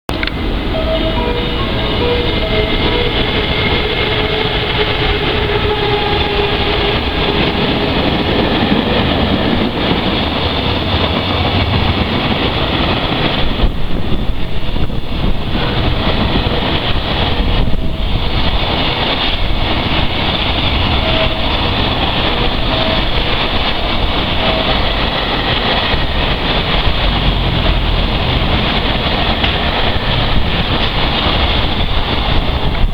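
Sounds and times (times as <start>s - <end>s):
faint high notes: 0.1s - 12.5s
train wheels rumbling on rails: 0.1s - 32.9s.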